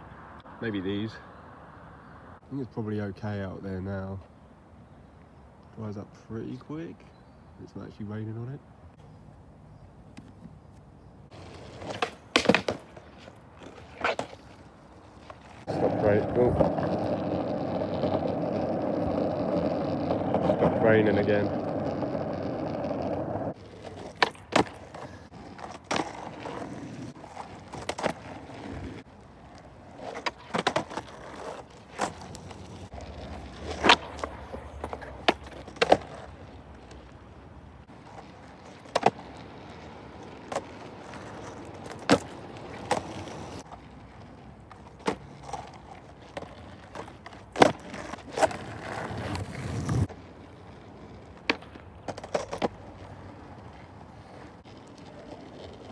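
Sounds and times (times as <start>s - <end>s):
skateboard rolling over rough ground: 10.1s - 55.9s
skateboard wheels clacking: 11.3s - 55.9s.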